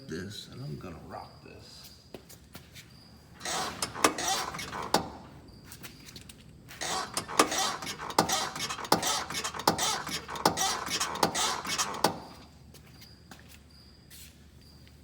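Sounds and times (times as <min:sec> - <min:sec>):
suspension creaking and popping: 0:03.4 - 0:12.6.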